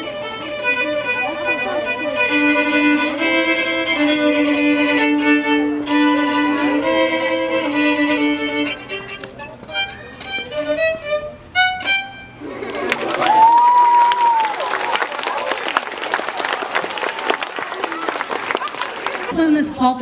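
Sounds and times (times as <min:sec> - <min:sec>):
solo violin melody: 0:00.0 - 0:12.4.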